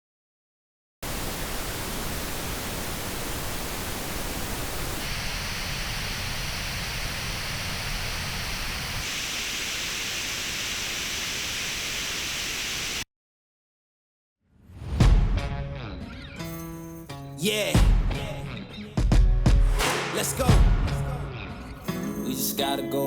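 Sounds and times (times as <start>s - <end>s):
pink noise hiss: 1.0s - 13.0s.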